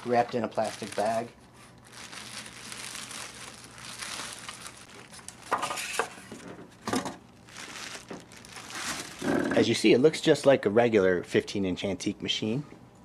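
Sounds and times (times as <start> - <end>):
plastic and styrofoam crinkling: 0.0 - 9.2.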